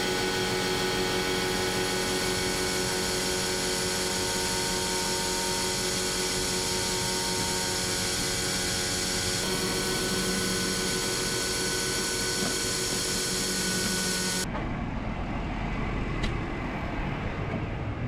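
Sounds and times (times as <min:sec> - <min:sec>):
leaf blower running: 0:00.0 - 0:14.4.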